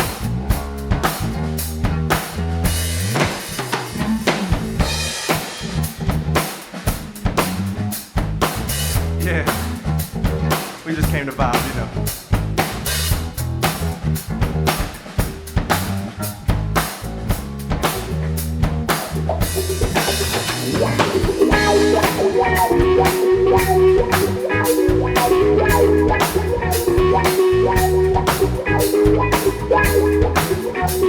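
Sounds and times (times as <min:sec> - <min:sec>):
bass guitar: 0:00.0 - 0:31.0
drum kit beat: 0:00.0 - 0:31.0
held electric guitar notes: 0:19.6 - 0:31.0.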